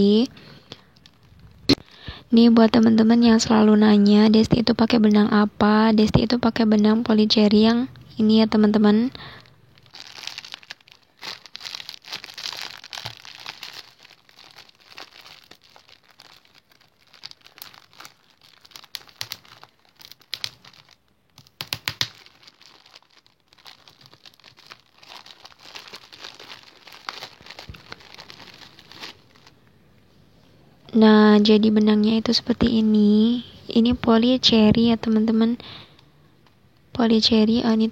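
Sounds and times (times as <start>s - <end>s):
packaging crinkling and rustling: 9.3s - 29.6s.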